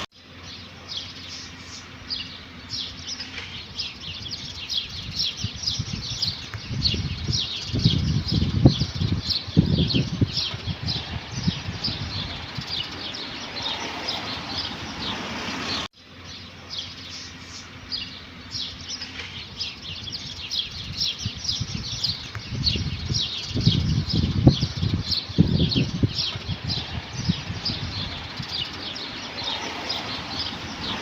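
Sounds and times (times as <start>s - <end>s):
low rumbling: 0.0s - 31.0s
small birds chirping: 0.0s - 31.0s.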